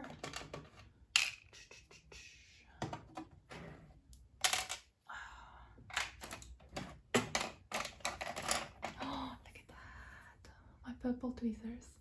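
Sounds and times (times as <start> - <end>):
tools clattering into toolbox drawer: 0.0 - 1.3, 6.2 - 9.0.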